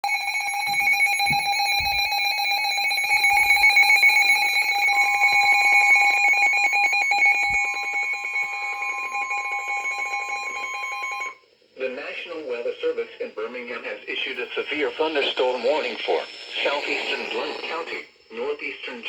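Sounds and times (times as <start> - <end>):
shrill pulsing electronic alarm tone: 0.0 - 11.4.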